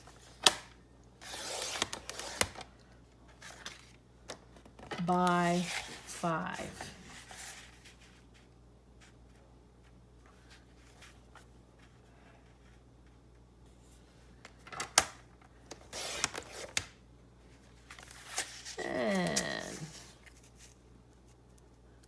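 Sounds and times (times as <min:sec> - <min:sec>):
paper scraping and rustling: 0:05.2 - 0:08.4, 0:15.8 - 0:16.8, 0:17.8 - 0:20.8.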